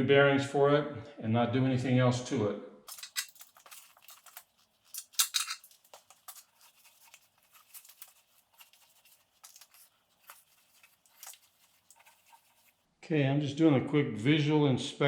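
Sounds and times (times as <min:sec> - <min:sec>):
objects scraping and rustling: 0:02.9 - 0:12.9.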